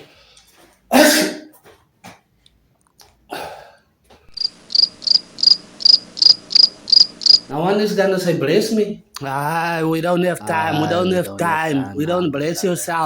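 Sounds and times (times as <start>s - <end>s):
man sneezing: 0.9s - 1.5s, 3.3s - 3.8s
crickets chirping: 4.3s - 7.6s.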